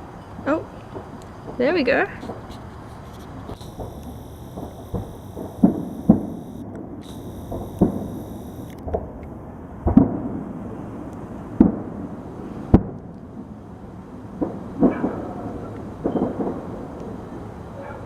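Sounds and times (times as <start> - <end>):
fireworks exploding: 2.2 - 9.2, 16.0 - 17.0.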